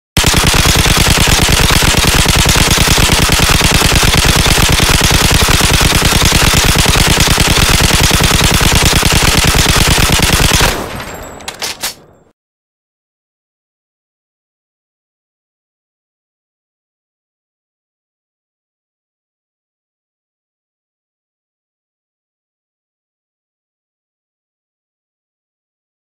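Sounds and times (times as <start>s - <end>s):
sharp clicks: 0.2s - 12.0s
machine gun firing: 0.2s - 12.1s
gunfire echo: 0.2s - 12.3s.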